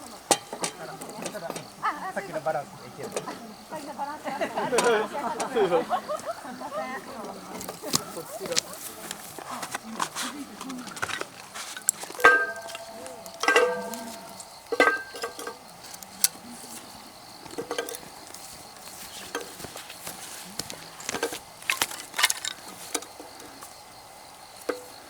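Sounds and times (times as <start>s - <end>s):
gear being handled: 7.6s - 16.8s, 17.5s - 23.2s
metal pieces clinking: 10.8s - 16.4s, 20.6s - 23.1s.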